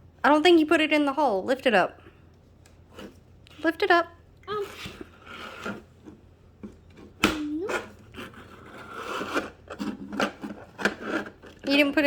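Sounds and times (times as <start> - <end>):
plastic toy scraping and rustling: 4.6 - 11.9.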